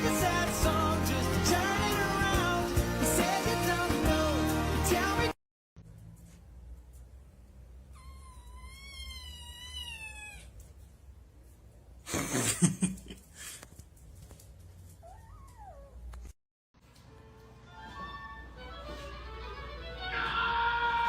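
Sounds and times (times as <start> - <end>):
cat meowing: 7.9 - 10.6.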